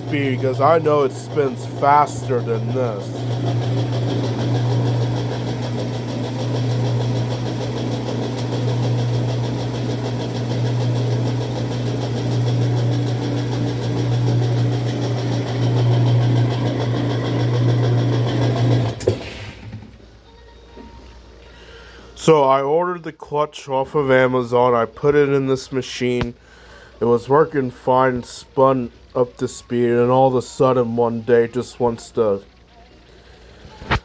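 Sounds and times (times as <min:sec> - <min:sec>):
drum scraping and popping: 0:00.0 - 0:19.2
washing machine motor hum: 0:00.0 - 0:20.3, 0:22.1 - 0:34.0.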